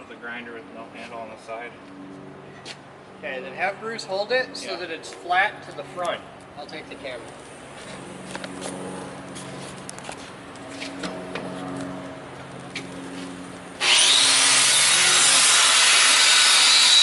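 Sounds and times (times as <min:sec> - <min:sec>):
angle grinder grinding metal: 0:13.8 - 0:17.0.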